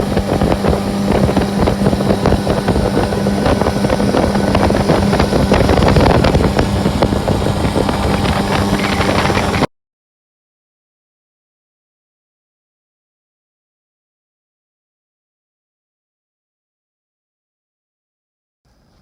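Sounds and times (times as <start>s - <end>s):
motorboat engine running: 0.0s - 9.7s
wind buffeting microphone: 0.0s - 9.7s.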